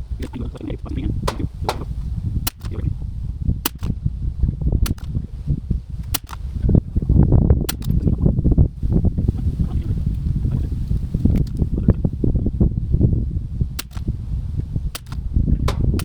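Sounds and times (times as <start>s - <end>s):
wind rumble on microphone: 0.0s - 16.0s
rifle shots: 15.7s - 16.0s.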